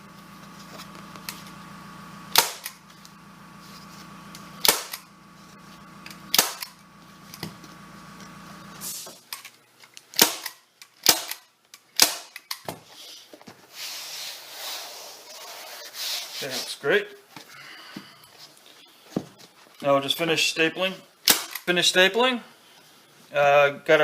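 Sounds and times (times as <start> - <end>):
staple gun firing: 2.3 - 2.8, 4.6 - 5.0, 6.3 - 6.7, 10.2 - 11.4, 12.0 - 12.6, 21.2 - 21.7.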